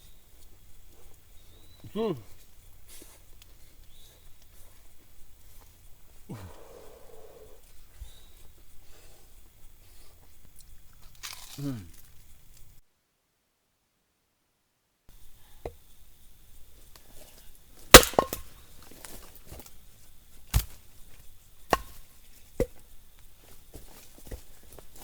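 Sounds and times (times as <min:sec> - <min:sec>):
firewood being chopped: 0:17.9 - 0:19.7, 0:20.4 - 0:22.8.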